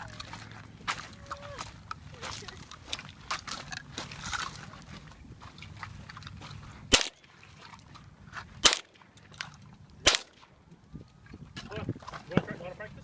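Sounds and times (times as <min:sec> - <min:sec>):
rifle shots: 0:06.9 - 0:07.4, 0:08.6 - 0:09.1, 0:10.0 - 0:10.5.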